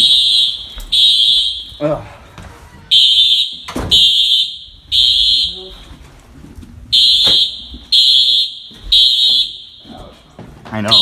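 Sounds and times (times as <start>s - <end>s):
fire alarm horn beeps: 0.0s - 1.9s, 2.9s - 5.8s, 6.9s - 10.2s.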